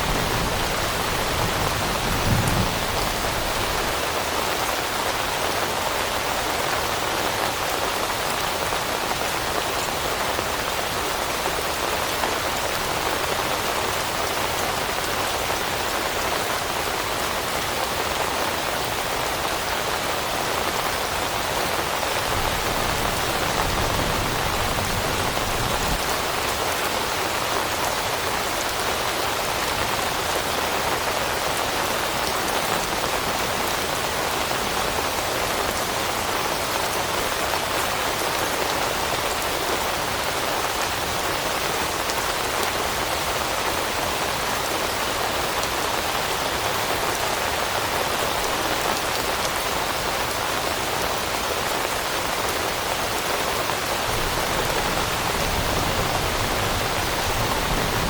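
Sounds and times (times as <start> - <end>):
rain pattering on leaves: 0.0 - 58.0.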